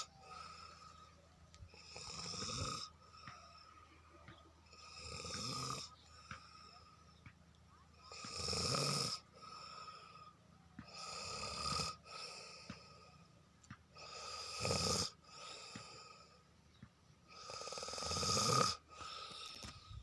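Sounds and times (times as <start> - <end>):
man snoring heavily: 0.0 - 1.0, 1.7 - 3.7, 4.6 - 6.6, 8.1 - 10.2, 10.8 - 13.0, 14.0 - 16.3, 17.3 - 19.7
quiet breathing: 0.0 - 20.0.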